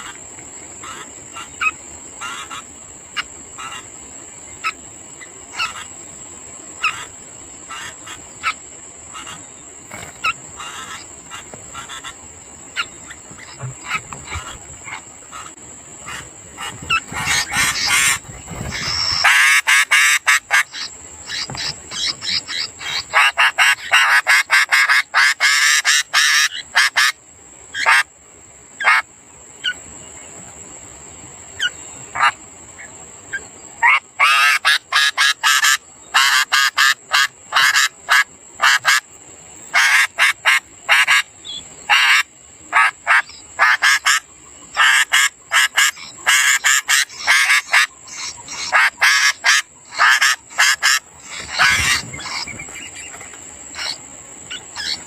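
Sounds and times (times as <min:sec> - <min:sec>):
nestlings harsh begging chirps: 0:00.8 - 0:06.0, 0:06.7 - 0:27.1, 0:39.7 - 0:55.0.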